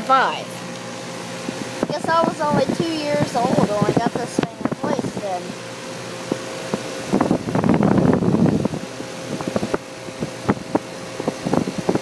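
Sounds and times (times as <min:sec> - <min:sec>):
air conditioner humming: 0:00.0 - 0:12.0.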